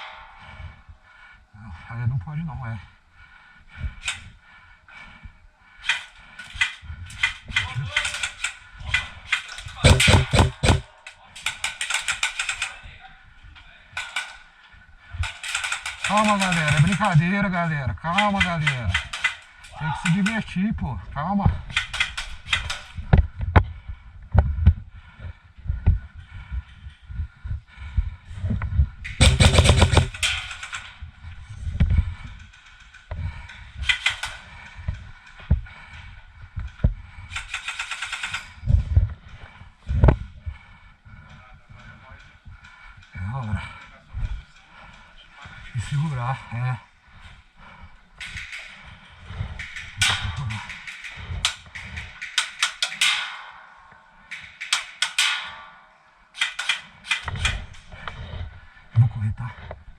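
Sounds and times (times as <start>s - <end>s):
sharp clacks and knocks: 9.4s - 10.9s, 15.2s - 17.2s, 29.2s - 30.9s, 37.3s - 38.6s, 48.2s - 58.2s
dull low thuds: 9.8s - 10.8s, 28.5s - 30.2s
low thumps: 9.8s - 10.8s, 29.2s - 30.2s
airsoft gun firing bursts: 9.8s - 10.9s, 15.4s - 17.2s, 29.2s - 30.7s.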